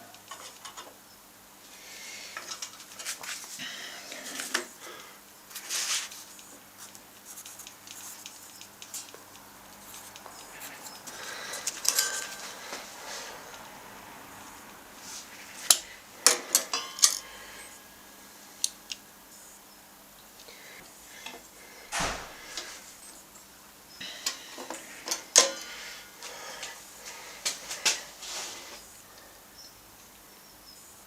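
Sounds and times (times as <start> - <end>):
metal tools clicking and clinking: 10.3 - 12.5, 15.7 - 17.3.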